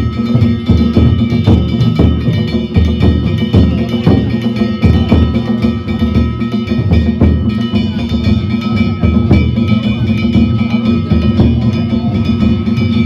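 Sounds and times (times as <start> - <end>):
large drum heavy strokes: 0.0 - 13.0
metal gongs ringing: 0.0 - 13.0.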